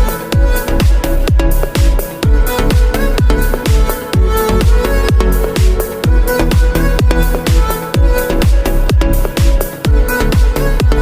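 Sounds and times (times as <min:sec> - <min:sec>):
electronic dance music: 0:00.0 - 0:11.0.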